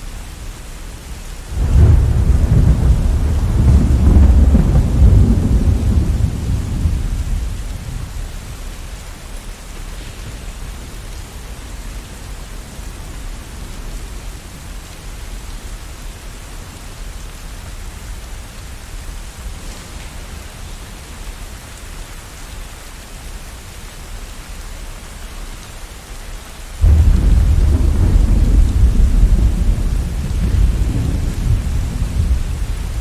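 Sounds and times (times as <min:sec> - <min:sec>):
thunder rumbling: 0:01.5 - 0:08.6, 0:26.8 - 0:33.0.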